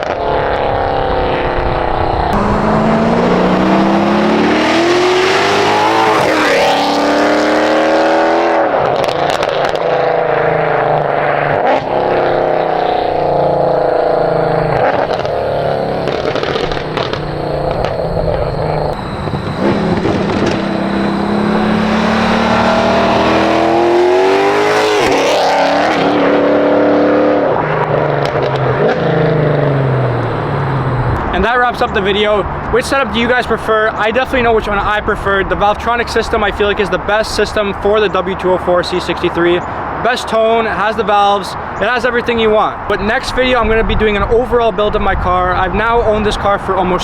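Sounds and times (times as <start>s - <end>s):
car engine accelerating hard: 0.0s - 33.1s.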